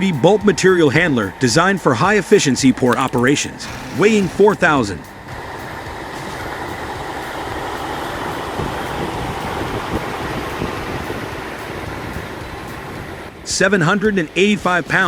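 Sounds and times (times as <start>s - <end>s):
heavy machinery running: 2.8s - 13.4s.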